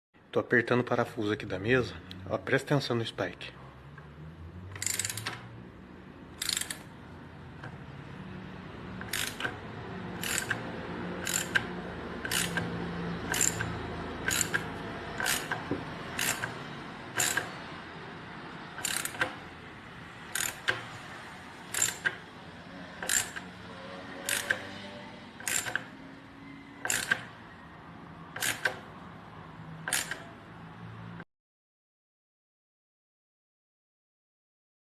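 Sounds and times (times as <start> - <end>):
ratchet tool clicking: 4.7 - 5.5, 6.4 - 7.0, 9.0 - 9.6, 10.2 - 17.6, 18.8 - 19.4, 20.3 - 20.9, 21.7 - 22.2, 23.0 - 23.6, 24.2 - 24.8, 25.4 - 26.0, 26.8 - 27.3, 28.4 - 28.8, 29.9 - 30.3.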